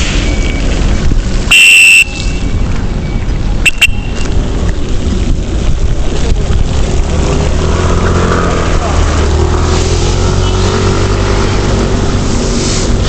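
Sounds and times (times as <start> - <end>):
road traffic rumble: 0.0 - 13.0
wind on microphone: 0.0 - 13.0
high-pitched beeps: 1.5 - 4.2.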